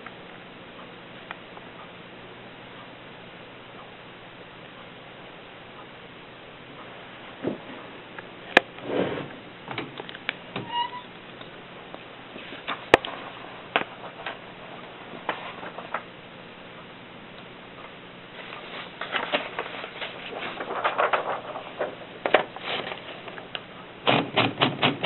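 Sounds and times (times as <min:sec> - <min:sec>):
typewriter key strikes: 0:24.0 - 0:25.0.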